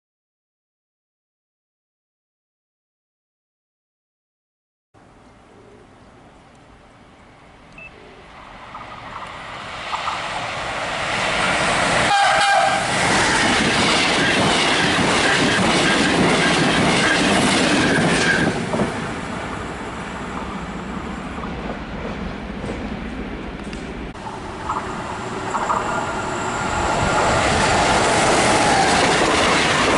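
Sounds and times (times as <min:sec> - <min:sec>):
train wheels on rails: 0:08.4 - 0:29.9
train horn: 0:12.1 - 0:13.5.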